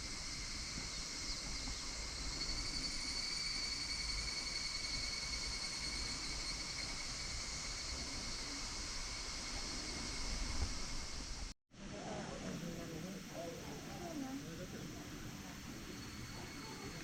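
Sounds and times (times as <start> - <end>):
cicada calling: 0.0 - 11.5, 13.2 - 17.0
high insect hiss: 0.0 - 11.6, 12.8 - 17.0.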